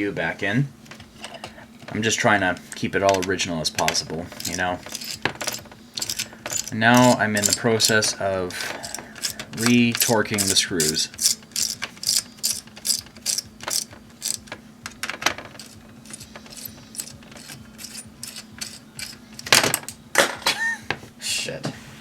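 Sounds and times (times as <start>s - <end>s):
ratcheting screwdriver clicking: 4.4s - 8.1s, 8.8s - 14.6s, 15.6s - 20.0s.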